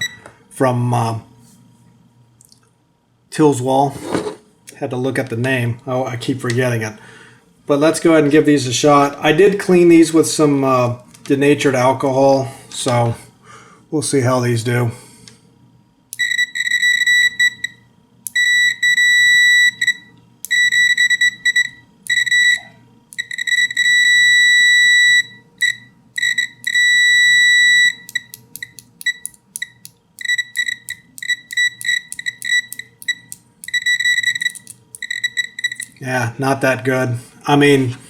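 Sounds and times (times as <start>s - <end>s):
multimeter continuity beeping: 0.0s - 0.3s, 16.1s - 36.0s.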